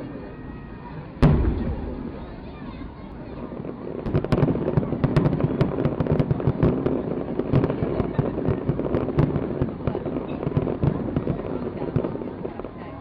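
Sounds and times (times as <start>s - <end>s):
fireworks bursts and crackling bangs: 0.0s - 13.0s
steady rumble: 1.2s - 4.0s.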